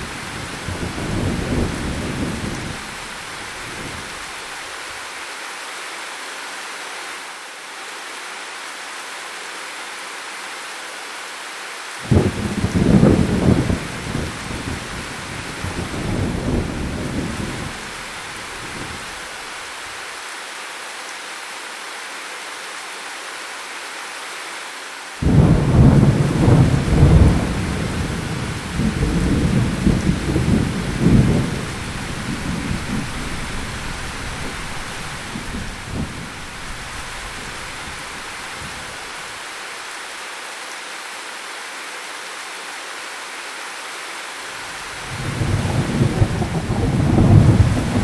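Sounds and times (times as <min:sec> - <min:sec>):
thunder rolling: 0:00.0 - 0:04.2, 0:12.1 - 0:19.2, 0:25.2 - 0:39.0, 0:45.0 - 0:48.0
steady rain: 0:00.0 - 0:48.0.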